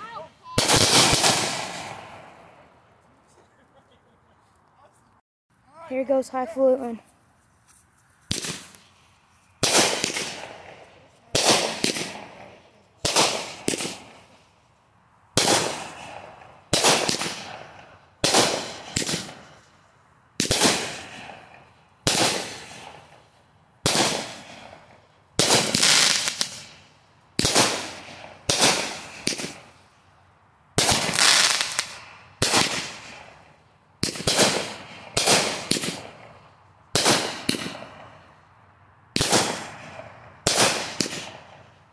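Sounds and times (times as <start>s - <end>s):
fireworks bangs: 0.0s - 2.8s, 8.2s - 9.0s, 9.6s - 14.4s, 15.3s - 19.7s, 20.4s - 26.8s, 27.4s - 29.9s, 30.8s - 38.2s, 39.2s - 41.7s.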